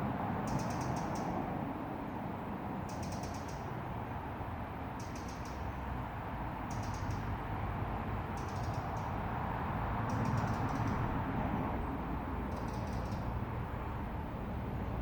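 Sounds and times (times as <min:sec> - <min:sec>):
rapid high ticks: 0:05.0 - 0:05.7, 0:08.4 - 0:09.2, 0:10.0 - 0:11.0, 0:12.5 - 0:13.3.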